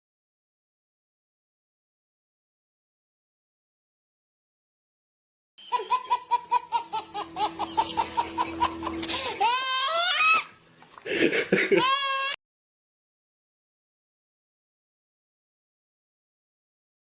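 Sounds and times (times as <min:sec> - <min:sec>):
high-pitched laughter: 0:05.6 - 0:10.5, 0:11.1 - 0:12.4
squealing laughter: 0:05.6 - 0:10.5, 0:11.1 - 0:12.4.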